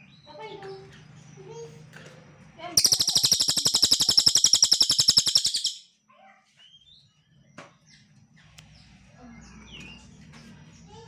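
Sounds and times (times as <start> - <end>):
songbird trilling and chirping: 2.8 - 5.9.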